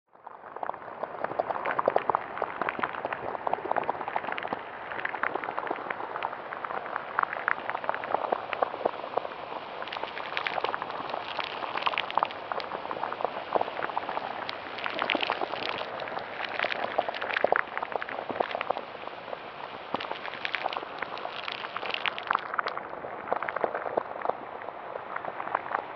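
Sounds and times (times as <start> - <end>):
dense bubbling and crackling: 0.1 - 25.9
steady hiss: 4.1 - 25.9.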